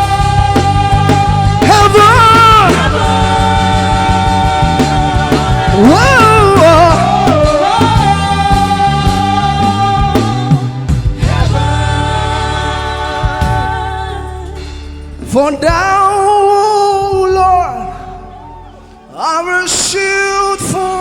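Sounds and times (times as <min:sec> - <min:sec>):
person singing wordlessly: 0:00.0 - 0:14.6
bass line: 0:00.0 - 0:21.0
keyboard chords: 0:00.0 - 0:21.0.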